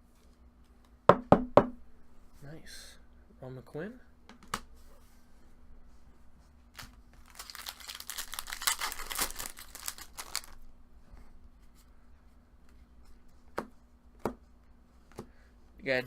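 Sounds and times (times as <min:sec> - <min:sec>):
foil wrapper tearing and crinkling: 0:06.8 - 0:10.6.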